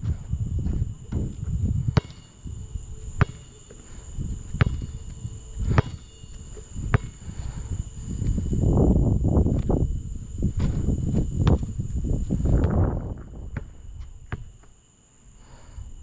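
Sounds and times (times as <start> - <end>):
crickets chirring: 0.0 - 16.0
basketball bouncing on hard court: 1.1 - 2.3, 3.2 - 3.8, 4.5 - 7.3.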